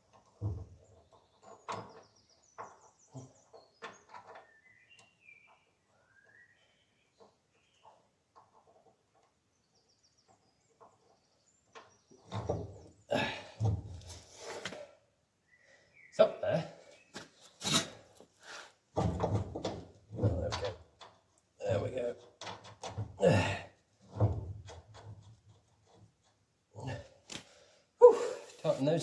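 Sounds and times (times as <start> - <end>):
small birds chirping: 0.0 - 14.6, 15.4 - 17.6.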